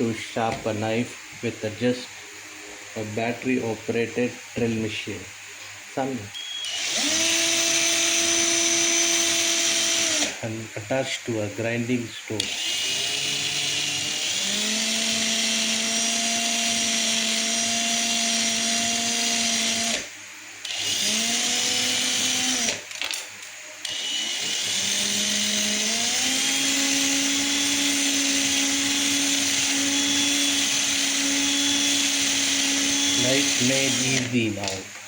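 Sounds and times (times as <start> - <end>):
cordless drill motor whine: 6.4 - 10.4, 12.4 - 23.2, 23.8 - 34.8.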